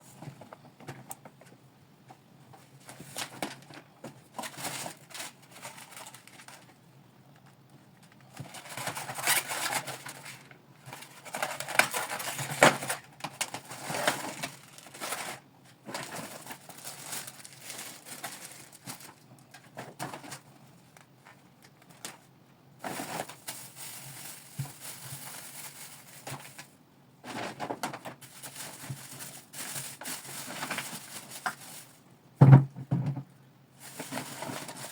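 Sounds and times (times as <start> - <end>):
bags and packaging rustling: 2.7 - 6.8, 8.1 - 32.0, 33.8 - 34.9
items knocking when set down: 32.4 - 33.3.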